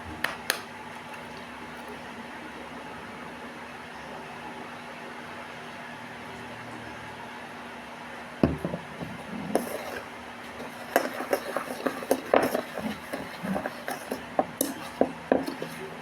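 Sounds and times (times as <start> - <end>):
utensil scraping a bowl: 9.0 - 16.0.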